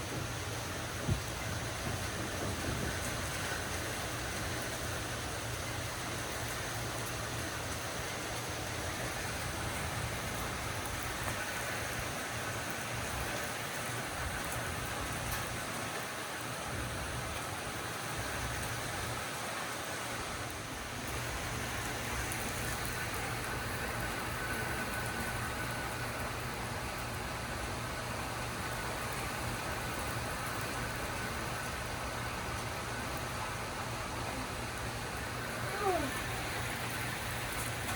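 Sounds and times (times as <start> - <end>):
low thunder rumble: 0.0 - 6.4
heavy rain falling: 0.0 - 37.9.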